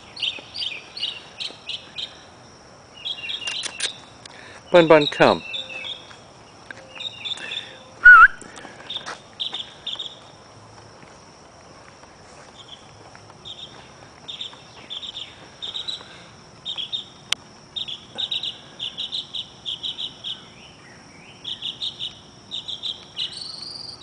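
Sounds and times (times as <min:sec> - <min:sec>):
crickets chirping: 0:00.0 - 0:24.0
sharp click: 0:03.5 - 0:04.0.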